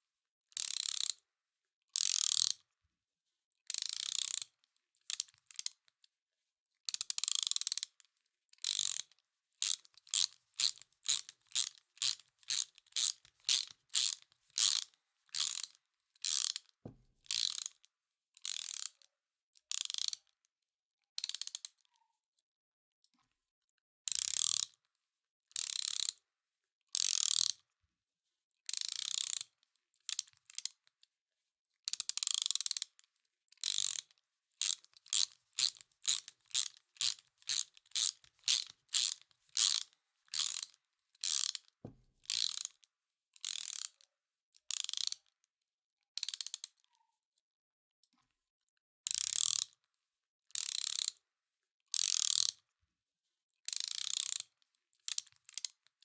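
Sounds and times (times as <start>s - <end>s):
ratchet wrench clicking: 0.6s - 1.1s, 2.0s - 2.6s, 3.7s - 4.4s, 7.0s - 7.9s, 8.6s - 16.7s, 17.3s - 17.8s, 18.4s - 19.0s, 19.7s - 20.1s, 24.2s - 24.7s, 25.6s - 26.1s, 27.0s - 27.5s, 28.8s - 29.4s, 32.0s - 32.9s, 33.6s - 41.6s, 42.3s - 42.7s, 43.4s - 43.9s, 44.8s - 45.1s, 46.3s - 46.5s, 49.1s - 49.7s, 50.6s - 51.1s, 52.0s - 52.5s, 53.9s - 54.4s.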